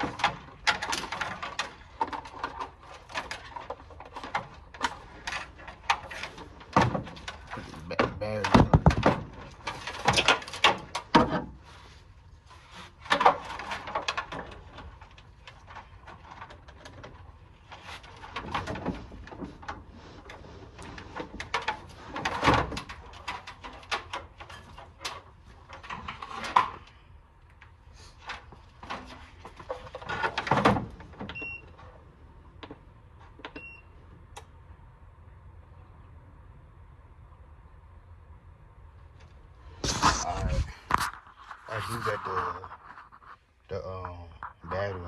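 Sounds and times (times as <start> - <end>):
knocks and clanks on car battery: 8.0 - 11.6.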